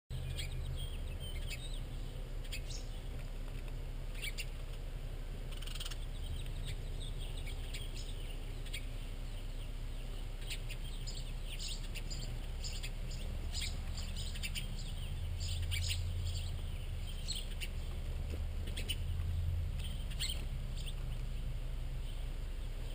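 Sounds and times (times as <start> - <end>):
steady low hum: 0.1 - 22.9
finches chirping: 0.2 - 3.3, 4.1 - 4.8, 5.4 - 22.9.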